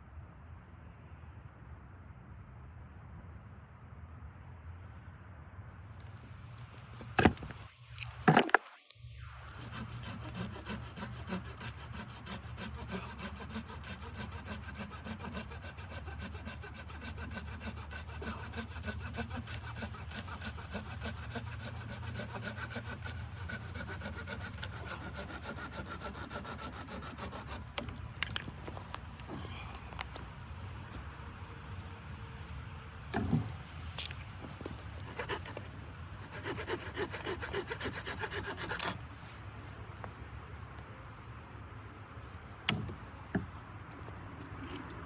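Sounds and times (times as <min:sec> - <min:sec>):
saw rasping through wood: 0:07.0 - 0:07.5, 0:09.3 - 0:29.6, 0:32.9 - 0:39.0.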